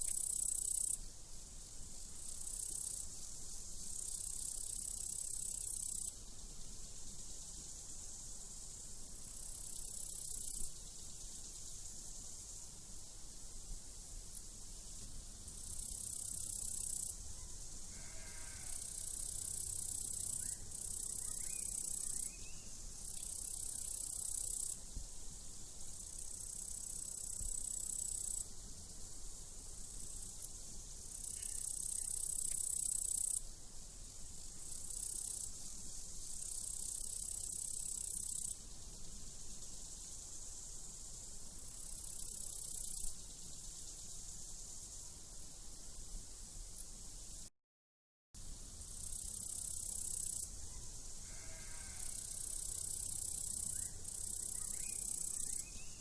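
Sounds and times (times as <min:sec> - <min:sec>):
crickets trilling: 0:00.0 - 0:46.0, 0:48.5 - 0:56.0
faint sheep bleat: 0:17.9 - 0:19.0, 0:51.2 - 0:52.2.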